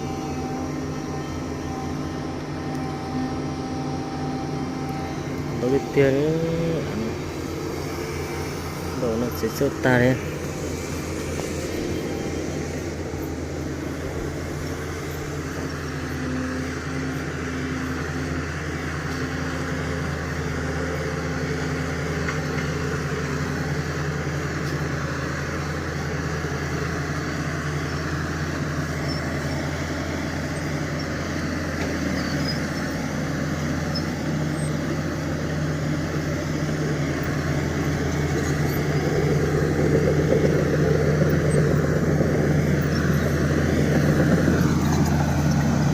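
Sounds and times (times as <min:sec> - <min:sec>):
heavy machine diesel engine: 0:00.0 - 0:45.9.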